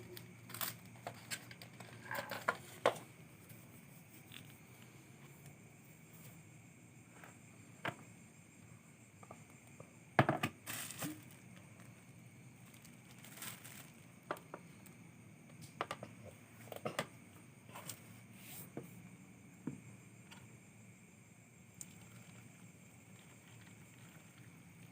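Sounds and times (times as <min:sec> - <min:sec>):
crackling and rustling: 0:00.0 - 0:06.4, 0:10.4 - 0:14.9, 0:21.7 - 0:24.9.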